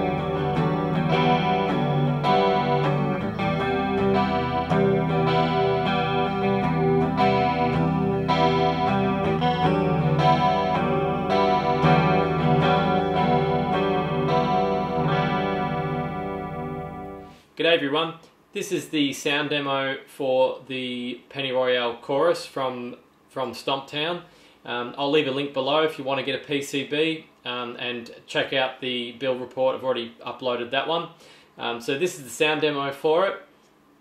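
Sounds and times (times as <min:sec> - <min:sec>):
electric guitar with chorus effect: 0:00.0 - 0:17.4.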